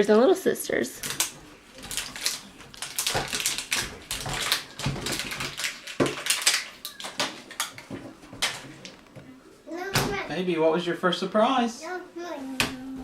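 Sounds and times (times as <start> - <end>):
plastic wrapping crinkling and tearing: 1.0 - 9.0.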